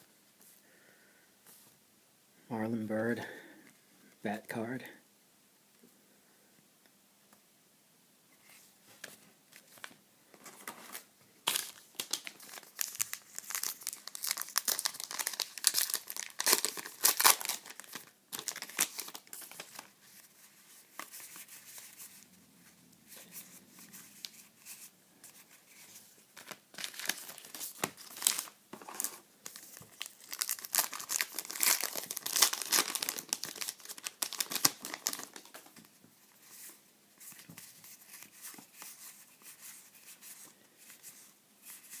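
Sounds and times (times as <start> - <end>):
wrapper tearing and crinkling: 10.6 - 19.9, 26.4 - 35.7.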